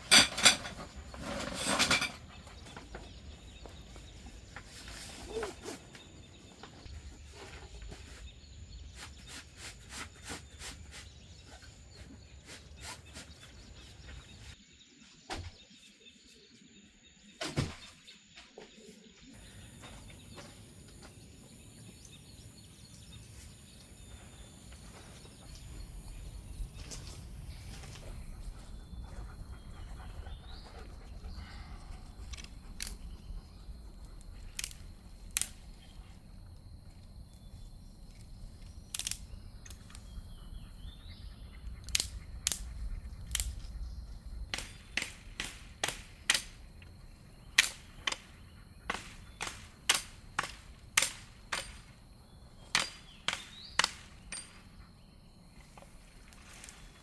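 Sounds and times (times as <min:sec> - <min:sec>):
low rumble of wind: 0:19.4 - 0:57.0
sharp cracks: 0:41.9 - 0:43.6, 0:44.5 - 0:46.7, 0:47.6 - 0:52.0, 0:52.7 - 0:54.6.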